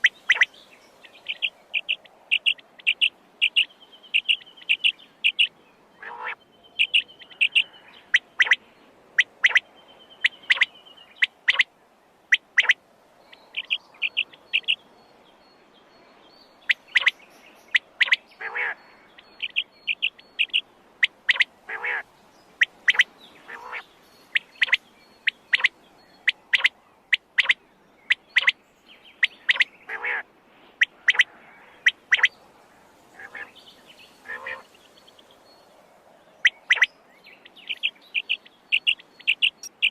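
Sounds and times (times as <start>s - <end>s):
quail calling: 0.0s - 0.5s, 1.2s - 8.6s, 9.2s - 9.6s, 10.2s - 11.7s, 12.3s - 12.8s, 13.5s - 14.8s, 16.7s - 22.0s, 22.6s - 28.6s, 29.2s - 30.2s, 30.8s - 32.4s, 33.1s - 33.6s, 34.2s - 34.7s, 36.4s - 39.9s.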